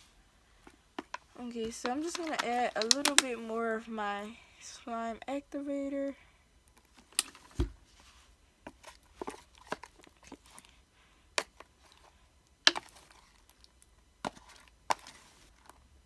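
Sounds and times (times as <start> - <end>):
clicks and taps of stirring slime: 1.8 - 3.4, 12.7 - 13.6.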